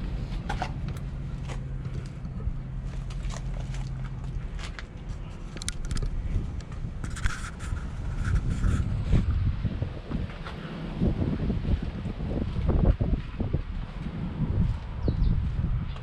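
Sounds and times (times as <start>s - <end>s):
low steady hum: 0.0s - 16.0s
wind rumble on microphone: 0.0s - 16.0s
handling scrapes and clicks: 0.4s - 9.2s.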